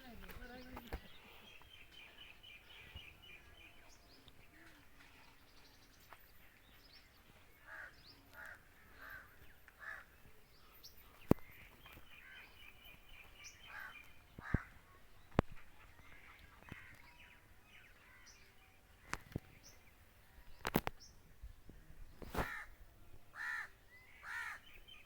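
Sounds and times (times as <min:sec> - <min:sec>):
birds chirping: 0:00.0 - 0:25.0
harsh bird calls: 0:11.2 - 0:18.4, 0:22.2 - 0:25.0.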